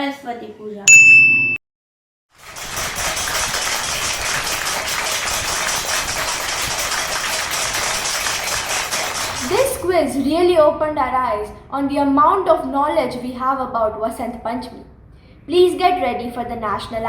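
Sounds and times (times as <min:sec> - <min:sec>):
applause: 0:02.4 - 0:09.8.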